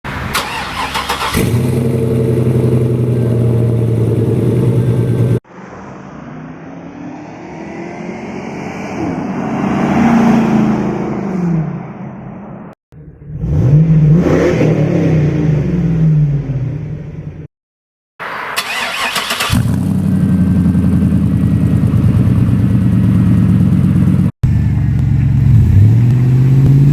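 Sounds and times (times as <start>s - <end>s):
engine exhaust revving: 0.1s - 5.4s, 13.0s - 17.5s, 18.2s - 26.9s.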